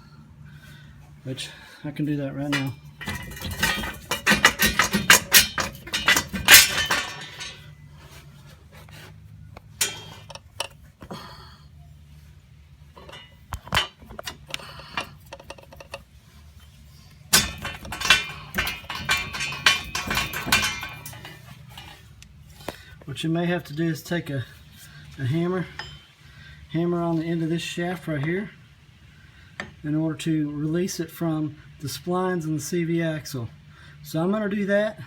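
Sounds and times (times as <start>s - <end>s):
low steady hum: 0.0s - 35.0s
metal car parts clinking: 2.4s - 11.2s, 12.8s - 23.0s, 23.6s - 26.2s.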